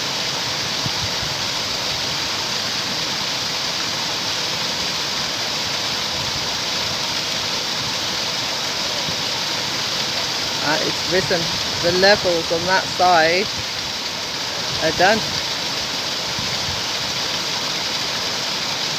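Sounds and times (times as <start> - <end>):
water rushing through weir: 0.0 - 18.9.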